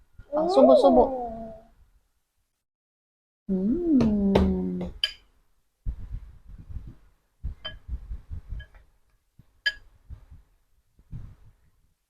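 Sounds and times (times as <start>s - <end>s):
soft low thumps: 5.8s - 8.7s.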